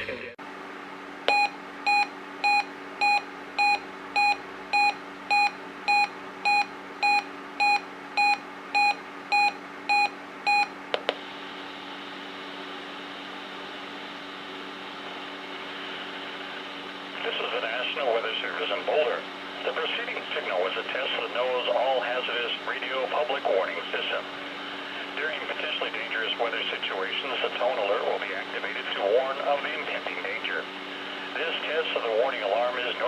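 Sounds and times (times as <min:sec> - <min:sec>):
short electronic beeps: 0:01.3 - 0:10.7
radio hiss with low hum: 0:11.0 - 0:33.0.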